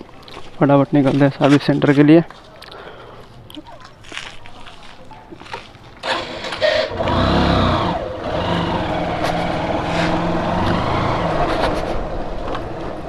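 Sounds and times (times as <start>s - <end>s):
motorcycle engine revving: 6.0s - 13.0s.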